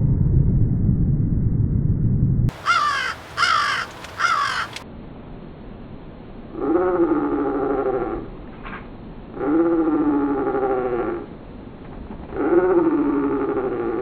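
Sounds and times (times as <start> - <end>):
low rumbling noise: 0.0 - 14.0
bird harsh calls: 2.5 - 4.8.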